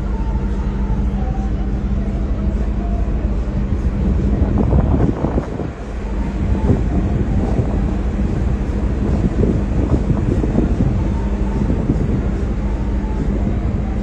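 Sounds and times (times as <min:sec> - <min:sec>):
low machinery hum: 0:00.0 - 0:14.0
wind buffeting microphone: 0:00.0 - 0:14.0.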